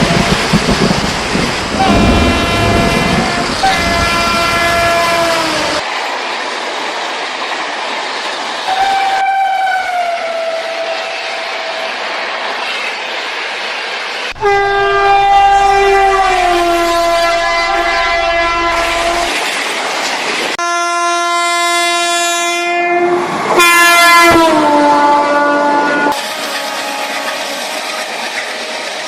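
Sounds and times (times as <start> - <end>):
rain hiss: 0.0 - 8.8, 10.6 - 20.6
train horn blasts: 1.7 - 5.8, 8.7 - 11.8, 14.4 - 19.4, 20.6 - 28.8.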